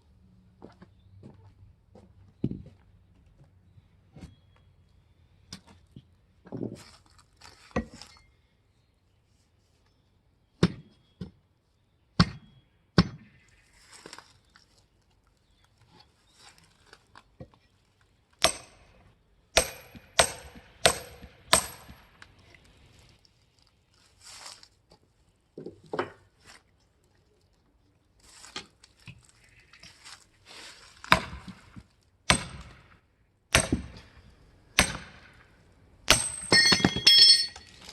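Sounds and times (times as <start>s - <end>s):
axe chopping firewood: 18.4s - 18.9s, 19.6s - 22.0s, 31.0s - 32.8s, 33.5s - 34.2s, 34.8s - 35.4s, 36.1s - 37.1s
ringing metallic strikes: 36.1s - 37.7s.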